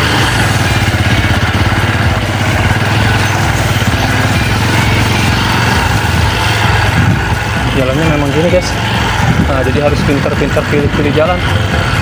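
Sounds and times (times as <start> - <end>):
motorcycle engine chugging: 0.0 - 12.0.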